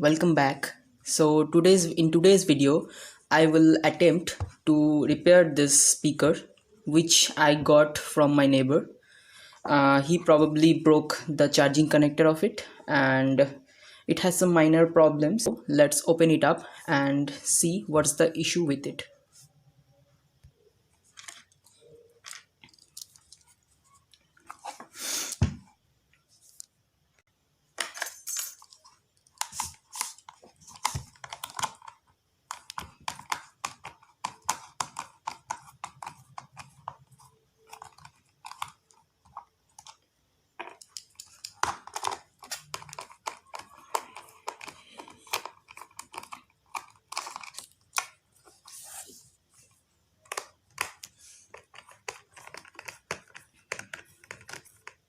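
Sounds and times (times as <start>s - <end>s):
plastic casing clicks and scrapes: 40.6s - 48.2s.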